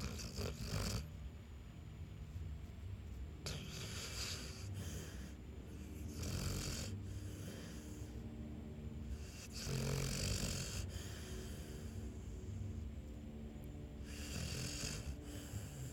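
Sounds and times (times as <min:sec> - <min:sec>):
sleeping breaths: 0:03.4 - 0:13.1, 0:14.0 - 0:15.9
person snoring: 0:09.2 - 0:11.9, 0:14.1 - 0:15.9.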